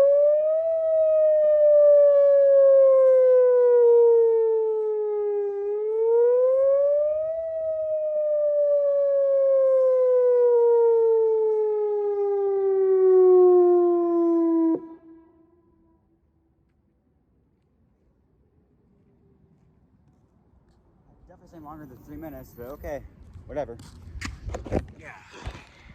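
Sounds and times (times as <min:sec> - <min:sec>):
warning siren wailing: 0:00.0 - 0:16.4.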